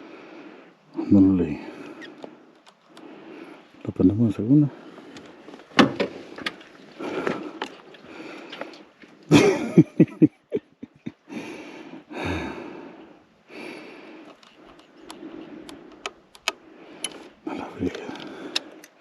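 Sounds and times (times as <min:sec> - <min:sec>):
person breathing hard: 0:00.0 - 0:00.9, 0:01.7 - 0:03.8, 0:06.1 - 0:09.0, 0:11.2 - 0:19.0.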